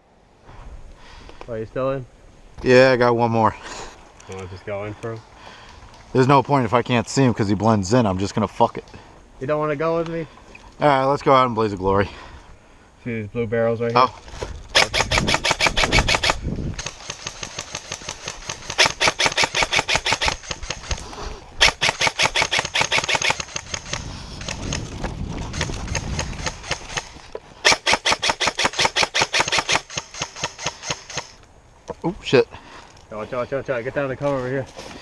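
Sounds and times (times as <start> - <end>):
airsoft guns firing full-auto: 14.7 - 21.0, 21.6 - 24.8, 25.5 - 31.4.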